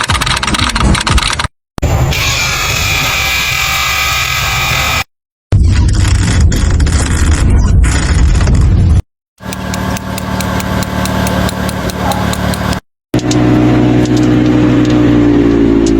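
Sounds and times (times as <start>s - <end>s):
car engine ticking: 9.4s - 15.0s
car engine running steadily: 9.4s - 15.9s
loud low car rumble: 9.4s - 15.9s.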